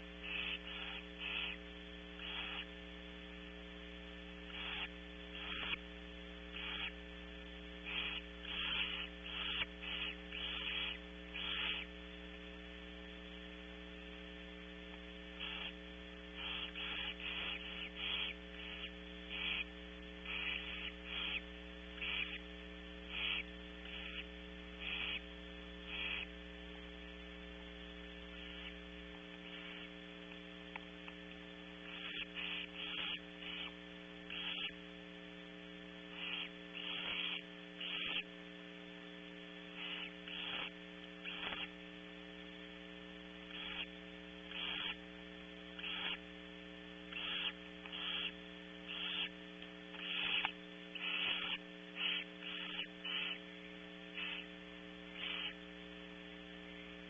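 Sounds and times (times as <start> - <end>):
steady electrical hum: 0.0 - 57.0
owl chicks hissing calls: 0.2 - 1.6, 2.2 - 2.7, 4.5 - 5.8, 6.5 - 7.0, 7.8 - 11.9, 15.4 - 15.8, 16.4 - 22.4, 23.0 - 25.3, 25.9 - 26.3, 31.8 - 34.8, 36.1 - 38.3, 39.7 - 41.7, 43.5 - 45.1, 45.8 - 46.3, 47.1 - 53.5, 54.1 - 55.6.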